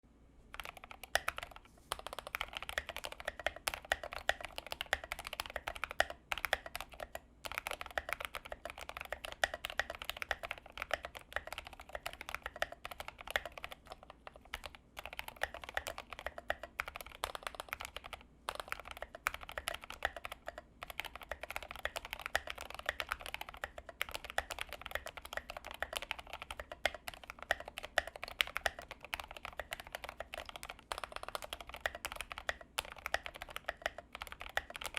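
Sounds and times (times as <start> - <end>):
mechanical keyboard typing: 0.6 - 34.9.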